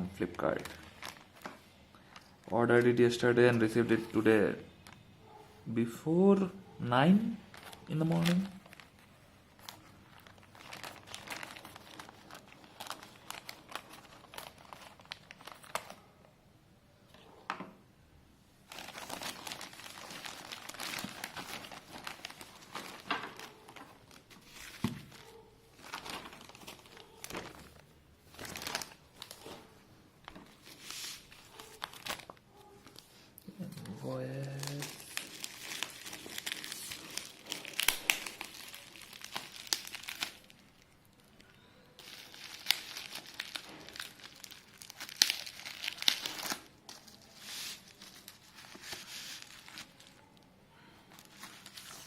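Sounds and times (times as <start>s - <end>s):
packaging crinkling and rustling: 0.2s - 5.0s, 7.3s - 16.1s, 18.6s - 50.4s, 51.0s - 52.0s
packaging tearing: 7.5s - 16.1s, 18.7s - 29.5s, 30.7s - 32.4s, 34.3s - 40.9s, 42.0s - 50.3s.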